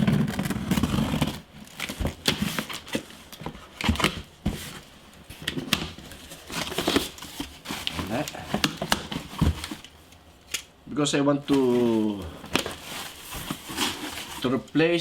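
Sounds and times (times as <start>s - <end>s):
packaging crinkling and tearing: 5.4s - 10.7s, 11.5s - 14.7s.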